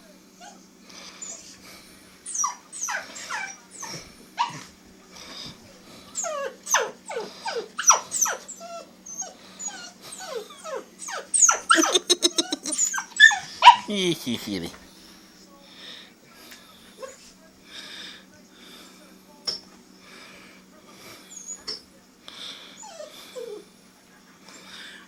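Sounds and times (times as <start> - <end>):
puppy whining and yelping: 2.2 - 4.7, 6.2 - 13.9, 22.8 - 23.6.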